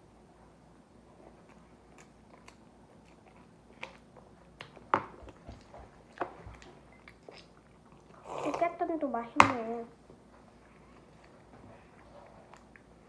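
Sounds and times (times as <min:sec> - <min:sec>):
person chewing bread: 0:01.1 - 0:08.6, 0:10.6 - 0:13.0.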